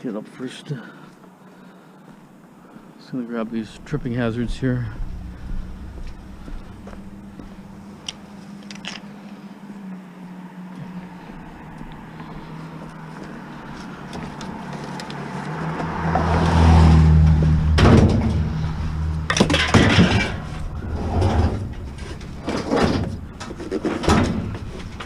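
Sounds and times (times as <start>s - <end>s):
vehicle engine humming: 1.1s - 25.0s
scrap metal bangs and clatters: 17.6s - 25.0s.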